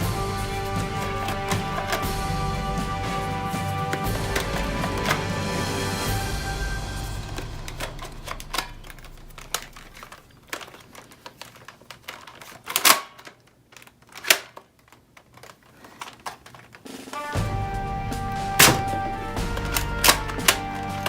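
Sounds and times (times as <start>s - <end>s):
toy blasters clicking: 1.0s - 2.2s, 7.1s - 17.4s, 18.6s - 21.0s.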